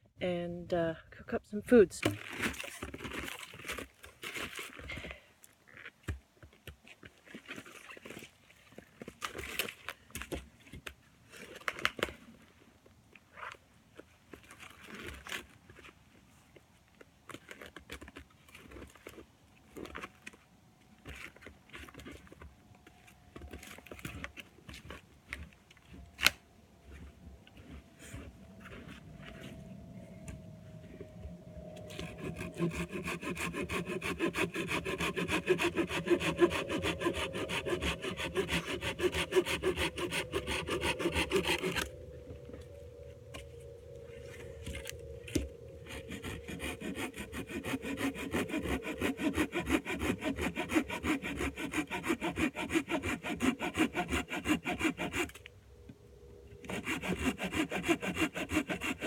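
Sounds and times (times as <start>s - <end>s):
hand saw cutting wood: 31.8s - 42.0s, 44.6s - 55.5s, 56.6s - 59.0s.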